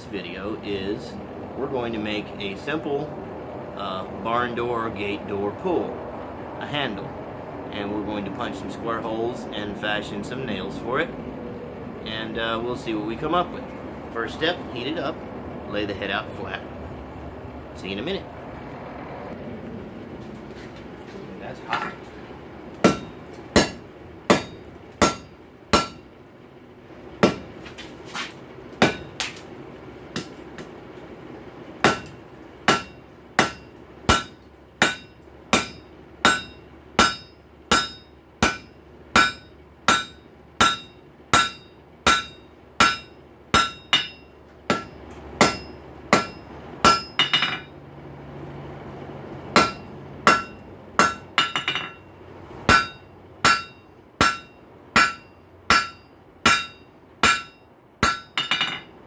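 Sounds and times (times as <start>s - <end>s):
hammer ringing on anvil: 22.8s - 26.0s, 31.9s - 47.8s, 49.6s - 52.1s, 52.7s - 58.9s.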